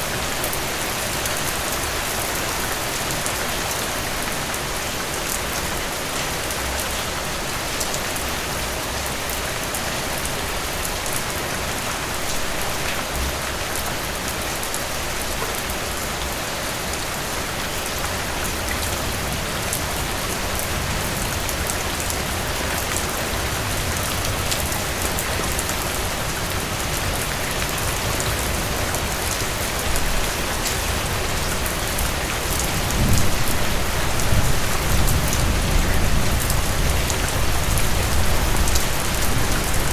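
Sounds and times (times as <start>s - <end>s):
heavy rain pouring: 0.0s - 39.9s.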